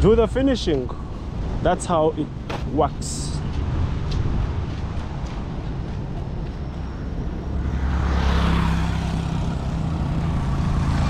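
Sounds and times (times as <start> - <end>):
vehicle engine humming: 0.0 - 11.0
vehicle rushing past: 3.3 - 11.0.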